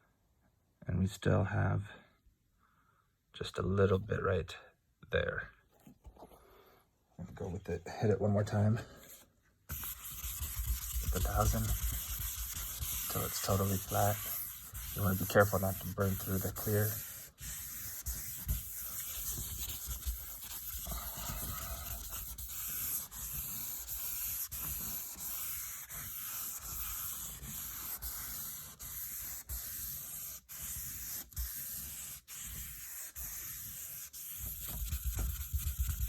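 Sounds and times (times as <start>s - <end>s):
wet sandpaper scrubbing: 9.7s - 36.0s.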